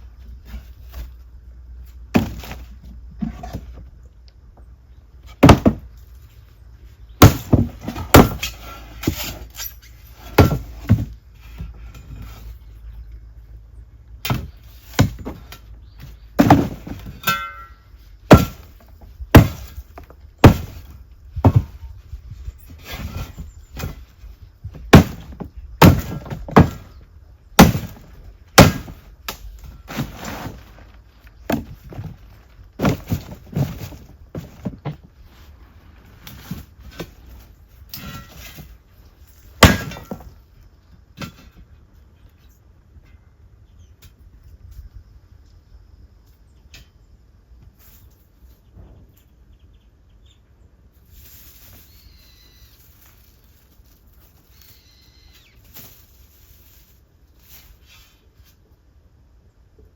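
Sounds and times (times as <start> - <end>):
hard knocks and impacts: 5.4 - 5.9, 7.2 - 9.2, 14.2 - 17.7, 18.3 - 21.8, 24.7 - 27.0, 27.6 - 29.1.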